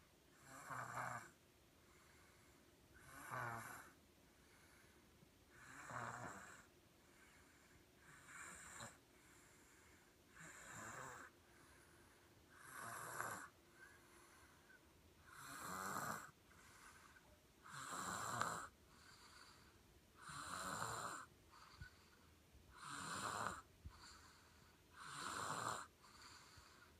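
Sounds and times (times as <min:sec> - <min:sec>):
baby snoring: 0:00.4 - 0:01.4, 0:03.0 - 0:04.0, 0:05.5 - 0:06.7, 0:08.1 - 0:09.0, 0:10.3 - 0:11.3, 0:12.5 - 0:14.6, 0:15.3 - 0:22.0, 0:22.7 - 0:26.9.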